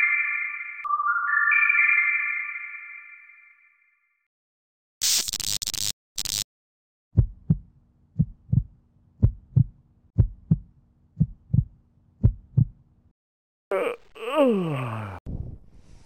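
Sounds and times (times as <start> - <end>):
deep heartbeat thumps: 7.2 - 12.8.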